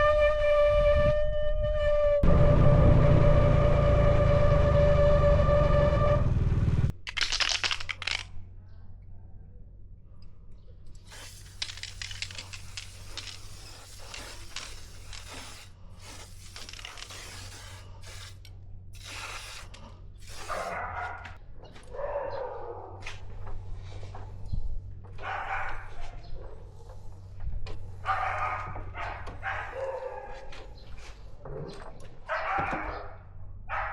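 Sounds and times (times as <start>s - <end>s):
scraping and rustling: 11.0s - 21.4s
spray hiss: 11.1s - 18.4s, 19.0s - 20.7s.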